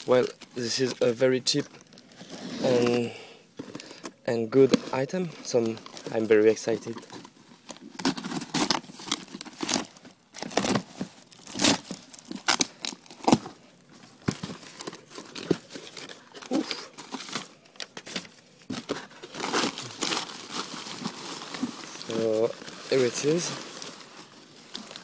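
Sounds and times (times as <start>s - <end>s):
packaging tearing and crinkling: 5.7s - 13.5s, 14.3s - 25.0s.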